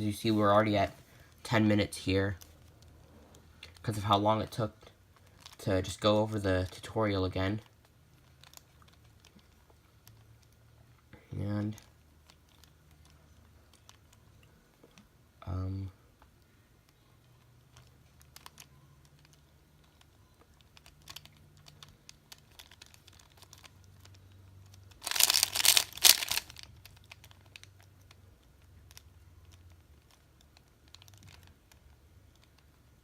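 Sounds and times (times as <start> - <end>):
puzzle cube clicking turns: 5.1 - 5.8, 11.7 - 15.1, 16.2 - 33.0.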